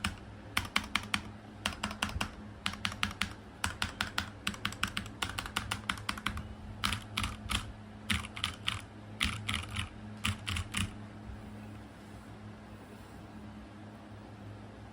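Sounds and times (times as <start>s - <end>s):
mechanical keyboard key clicks: 0.0s - 10.9s
faint low hum: 0.0s - 14.9s.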